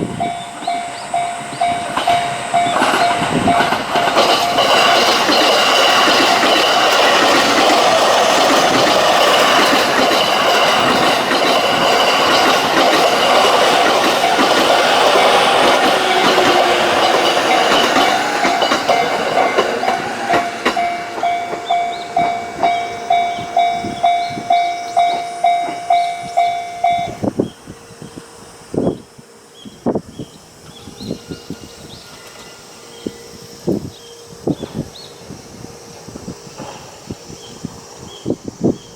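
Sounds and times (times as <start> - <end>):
level crossing warning bell: 0.0 - 27.4
train passing: 0.0 - 38.9.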